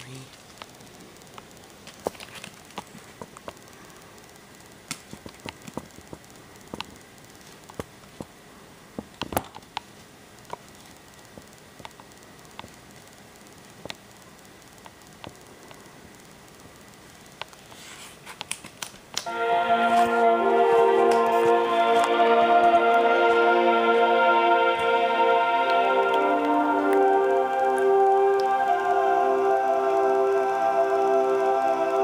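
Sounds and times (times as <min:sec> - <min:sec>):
clicks and crackling pops: 0:00.0 - 0:19.3
tape hiss: 0:00.0 - 0:32.0.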